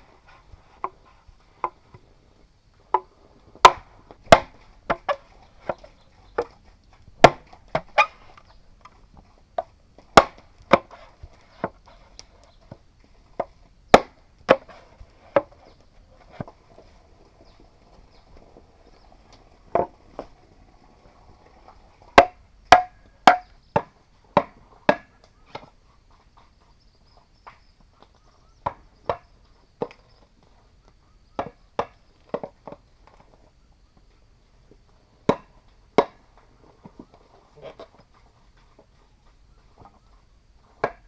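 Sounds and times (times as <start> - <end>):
tool knocking on bamboo: 22.2 - 25.1.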